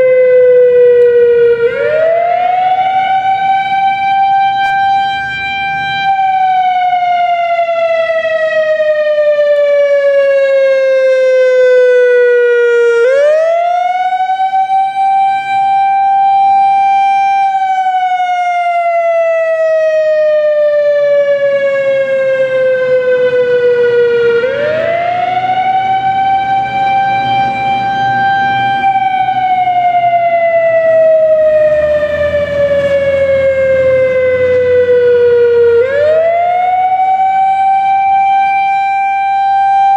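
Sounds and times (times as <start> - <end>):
warning siren wailing: 0.0 - 39.9.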